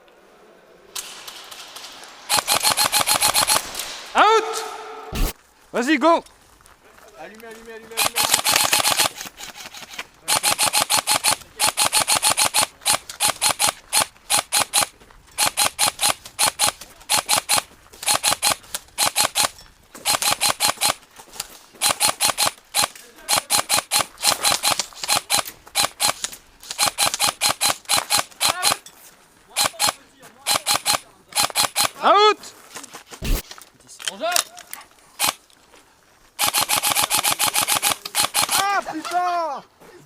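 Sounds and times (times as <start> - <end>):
airsoft guns firing bursts: 2.3 - 4.3, 5.2 - 5.4, 7.9 - 21.0, 21.8 - 28.8, 29.5 - 32.0, 33.2 - 33.5, 35.2 - 35.4, 36.4 - 38.9.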